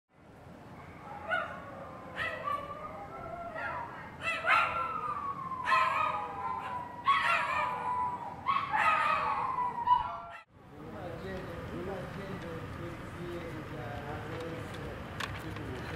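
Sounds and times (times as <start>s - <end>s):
dog barking and howling: 0.7s - 10.5s.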